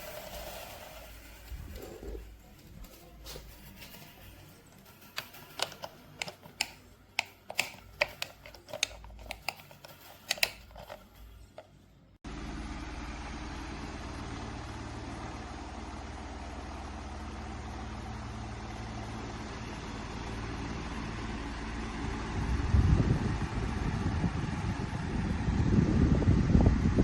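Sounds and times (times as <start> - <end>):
fan motor hum: 0.0 - 27.0
clicks and knocks of handling: 2.6 - 11.8
fan rushing air: 12.3 - 27.0.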